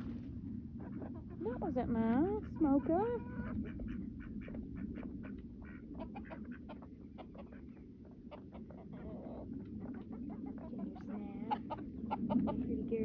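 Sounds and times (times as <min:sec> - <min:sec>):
low rumble: 0:00.0 - 0:08.0
chickens clucking: 0:00.8 - 0:12.9.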